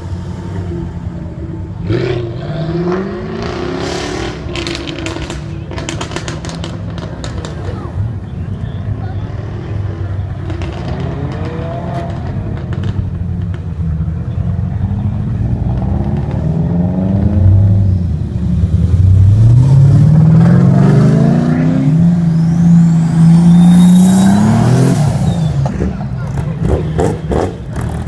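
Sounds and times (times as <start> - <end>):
sports car engine accelerating: 8.6 - 28.0.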